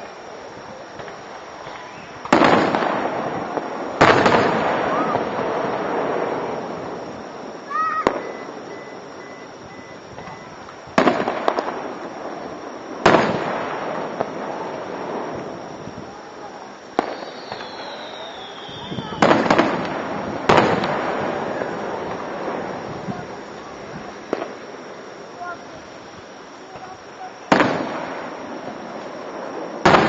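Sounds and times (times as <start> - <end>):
fireworks shells bursting: 1.0 - 30.0.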